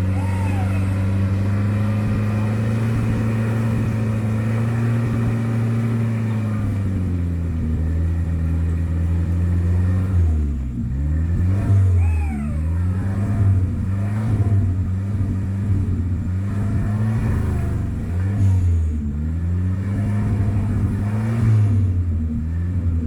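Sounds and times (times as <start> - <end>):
off-road vehicle engine revving: 0.0 - 23.0.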